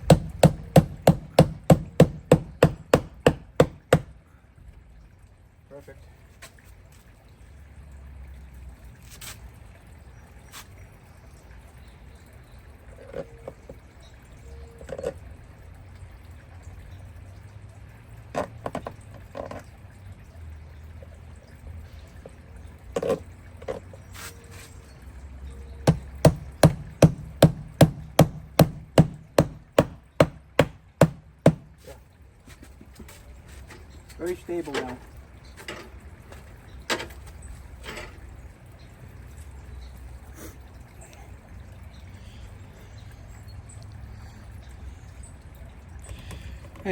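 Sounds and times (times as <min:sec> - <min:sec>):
hammer driving nails into wood: 0:00.0 - 0:04.1, 0:25.9 - 0:31.7.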